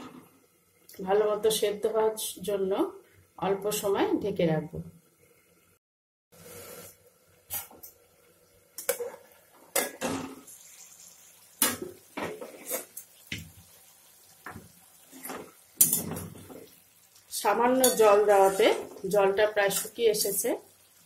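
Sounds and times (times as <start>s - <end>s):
metal cookware clattering: 15.2s - 16.7s, 17.7s - 19.1s.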